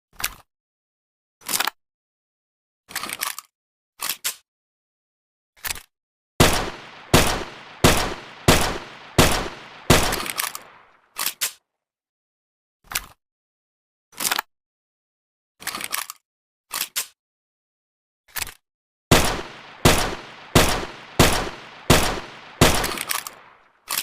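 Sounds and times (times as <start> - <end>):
pistol shots: 6.4 - 10.9, 19.1 - 23.6.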